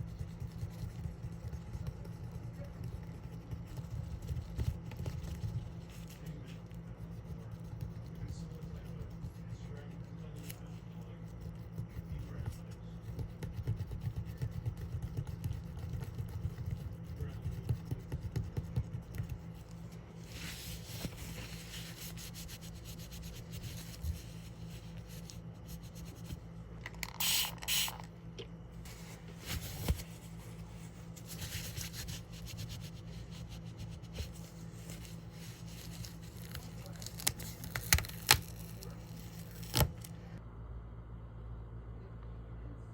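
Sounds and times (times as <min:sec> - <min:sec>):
scrubbing a coin: 0:00.0 - 0:28.1, 0:28.8 - 0:39.9
short hissy bursts: 0:27.2 - 0:28.0.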